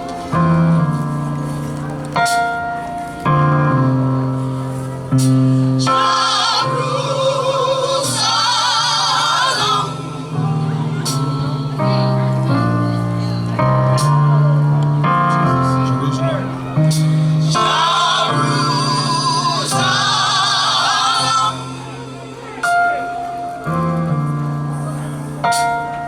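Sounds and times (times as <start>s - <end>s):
keyboard chords: 0.0s - 26.0s
people singing: 4.4s - 23.1s.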